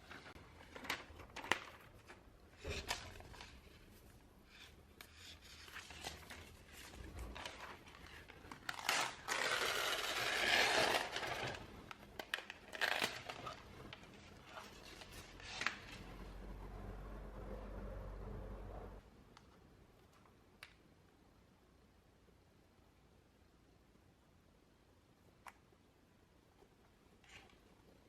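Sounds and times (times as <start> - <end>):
packaging tearing and crinkling: 7.3 - 13.6.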